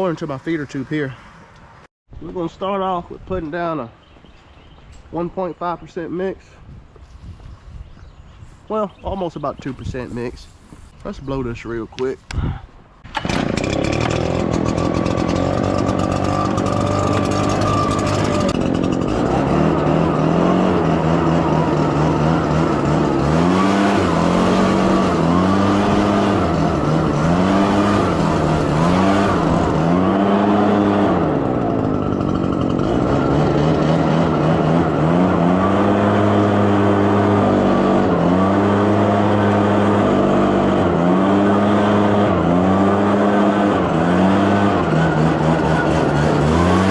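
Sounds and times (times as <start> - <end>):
leaf blower engine revving: 13.0 - 46.9.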